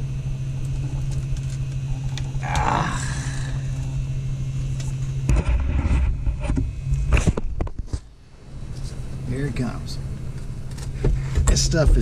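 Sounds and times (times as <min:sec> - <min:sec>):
hot-air blower humming: 0:00.0 - 0:12.0.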